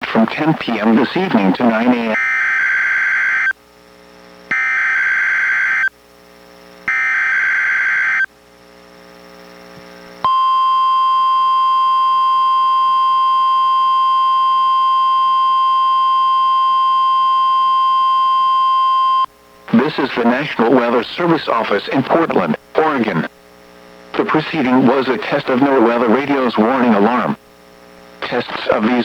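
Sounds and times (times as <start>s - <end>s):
faint radio hiss: 0.0s - 2.2s, 19.2s - 29.0s
steady warning alarm tone: 1.9s - 3.6s, 4.5s - 5.9s, 6.9s - 8.3s, 10.2s - 22.3s.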